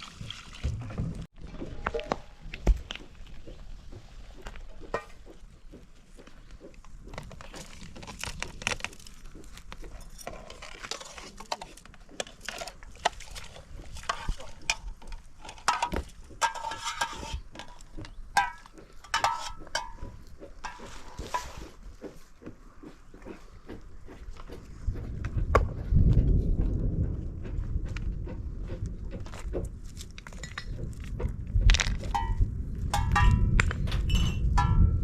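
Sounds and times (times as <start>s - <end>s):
dishes and utensils clinking: 15.6s - 17.8s.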